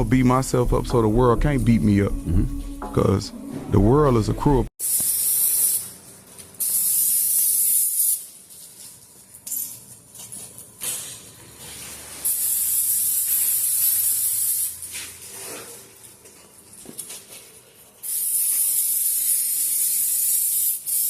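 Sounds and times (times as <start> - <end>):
pressurized air hissing: 4.8 - 6.0, 6.6 - 8.3, 18.0 - 21.0.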